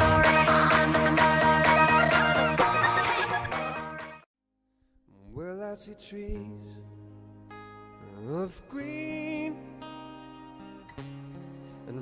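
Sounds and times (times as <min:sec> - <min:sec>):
electronic dance music: 0:00.0 - 0:04.2.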